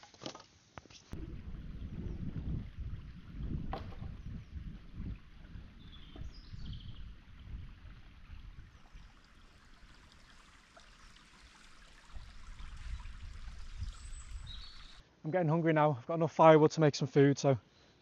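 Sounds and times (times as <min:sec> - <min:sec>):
low rumble: 0:01.2 - 0:10.3
stream flowing: 0:01.2 - 0:15.0.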